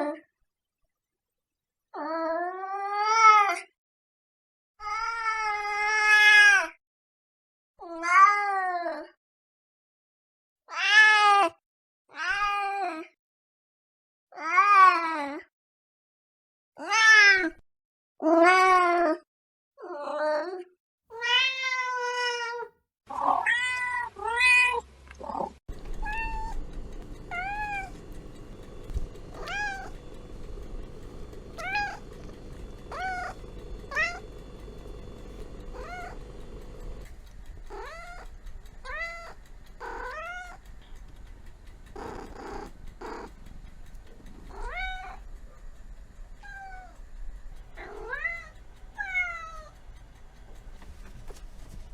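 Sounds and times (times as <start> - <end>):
cats meowing: 25.7 - 37.0, 37.7 - 40.6, 44.5 - 45.2
steady background hum: 25.7 - 51.9.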